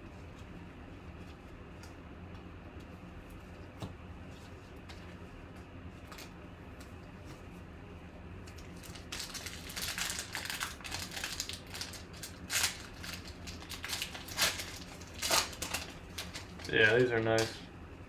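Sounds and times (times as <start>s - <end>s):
wrapper crackles: 8.5s - 17.5s
wrapper crinkling and rustling: 8.5s - 17.6s.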